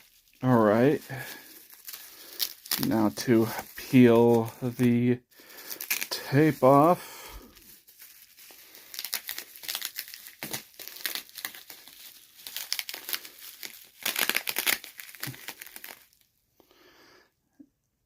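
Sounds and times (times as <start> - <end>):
packaging crinkling: 0.0 - 16.3
tape peeling off package: 1.1 - 3.6, 5.6 - 6.6, 7.7 - 16.2.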